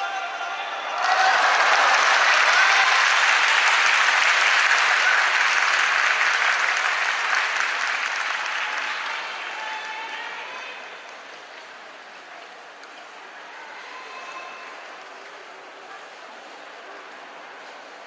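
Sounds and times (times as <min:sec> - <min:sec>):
crowd applauding loudly: 0:00.0 - 0:11.0.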